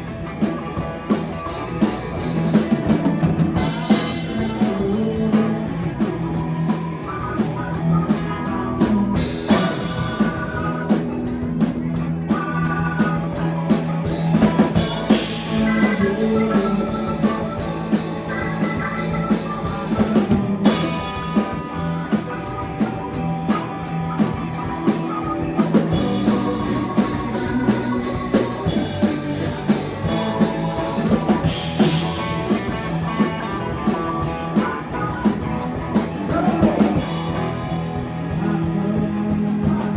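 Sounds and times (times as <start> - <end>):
drum kit with cymbal and snare: 0.0 - 39.9
electric guitar: 0.0 - 39.9.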